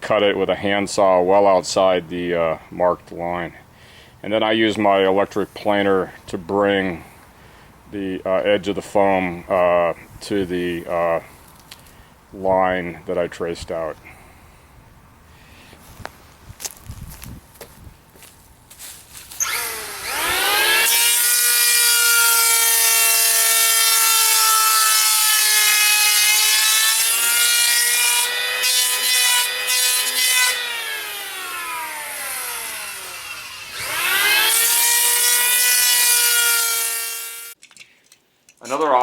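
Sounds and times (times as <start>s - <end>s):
electric hand planer whining: 19.4s - 37.6s.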